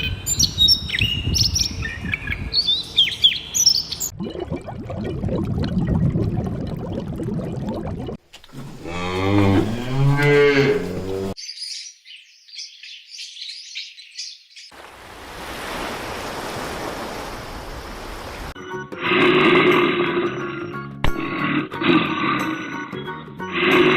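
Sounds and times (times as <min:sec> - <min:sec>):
large animal calling: 0:08.6 - 0:11.4.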